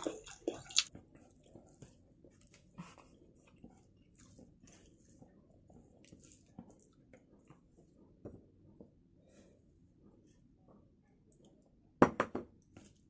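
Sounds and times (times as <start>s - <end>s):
mouth smacks and clicks: 0.0s - 0.9s
chewing food: 0.0s - 7.6s.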